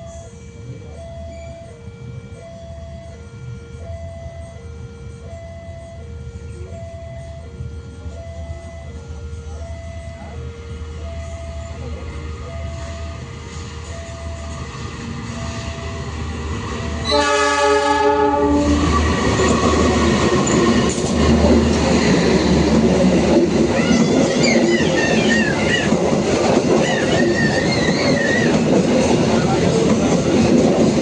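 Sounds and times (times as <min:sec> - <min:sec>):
level-crossing warning beeps: 0:00.0 - 0:31.0
train horn blast: 0:16.9 - 0:22.5
train wheels clattering: 0:18.8 - 0:31.0
high wheel squeal: 0:23.7 - 0:26.0, 0:26.8 - 0:28.8.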